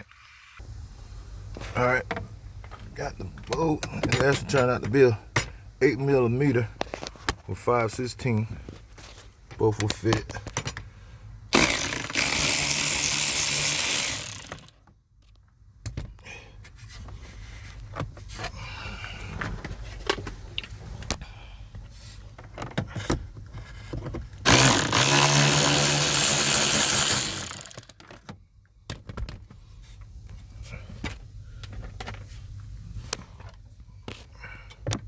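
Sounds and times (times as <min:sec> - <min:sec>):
power tool motor running: 0:11.6 - 0:14.7, 0:24.5 - 0:27.9.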